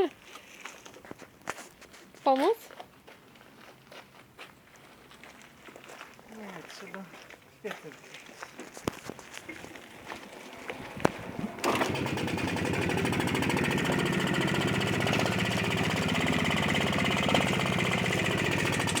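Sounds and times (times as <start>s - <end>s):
motorcycle engine running: 9.9s - 19.0s.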